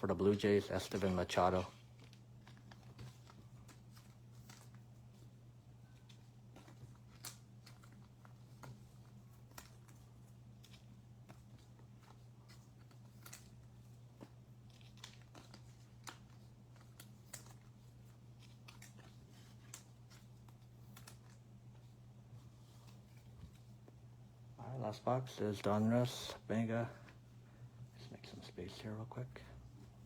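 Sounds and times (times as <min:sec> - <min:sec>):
low electrical hum: 0:00.0 - 0:30.0
trading cards and wrappers rustling: 0:00.1 - 0:24.1.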